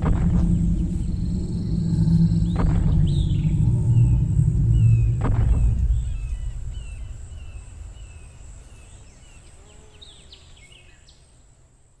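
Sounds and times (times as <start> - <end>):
deep low rumble: 0.0 - 9.2
bird chirps: 0.0 - 11.3.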